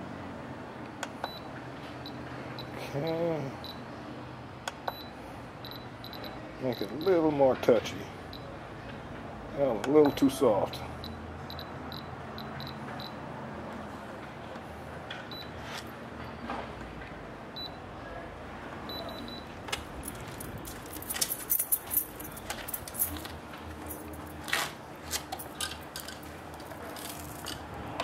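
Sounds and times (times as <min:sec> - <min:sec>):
short high beeps: 0:04.9 - 0:07.2
gear clicking and rattling: 0:19.7 - 0:27.6.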